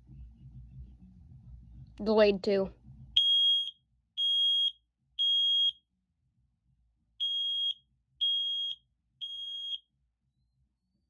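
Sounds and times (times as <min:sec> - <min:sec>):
smoke alarm beeping: 0:03.2 - 0:05.8, 0:07.2 - 0:09.8.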